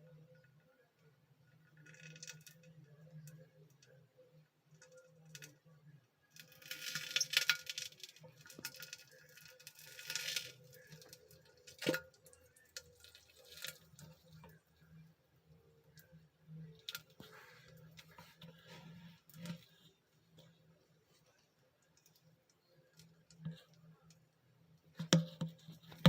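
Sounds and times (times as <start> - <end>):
man urinating into toilet: 6.4 - 14.6
small knocks and ticks: 24.9 - 26.0.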